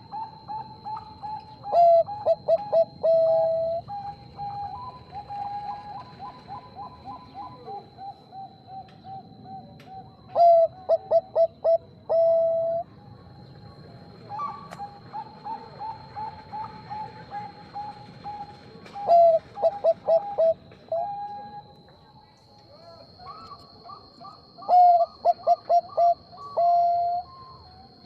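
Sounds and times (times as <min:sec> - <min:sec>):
doves cooing: 0:00.0 - 0:12.8, 0:14.3 - 0:21.8, 0:23.1 - 0:28.0
faint high whine: 0:00.0 - 0:28.0.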